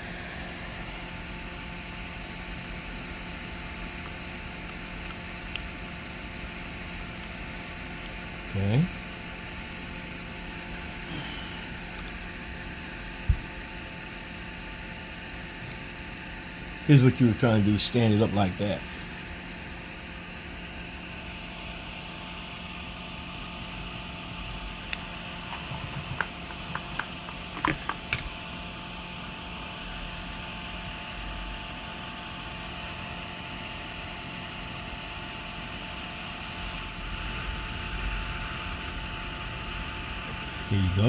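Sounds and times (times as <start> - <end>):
electrical hum: 0.0 - 41.0
fan-like hiss: 7.4 - 33.3
small tools clicking and tapping: 25.5 - 28.3.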